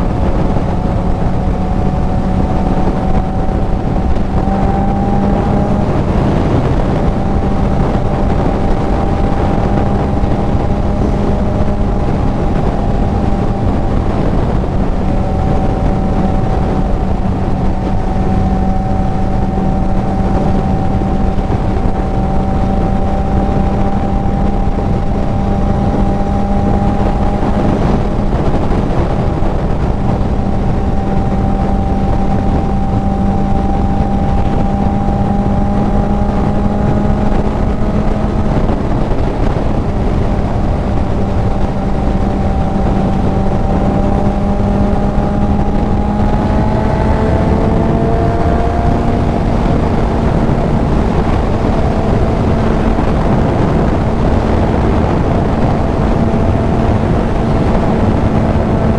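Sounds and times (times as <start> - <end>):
motorcycle engine cruising: 0.0 - 58.9
wind rush on microphone: 0.0 - 58.9.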